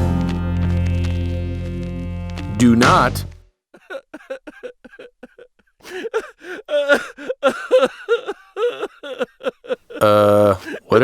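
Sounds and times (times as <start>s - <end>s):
person making grunting vocal noises: 10.0s - 10.9s.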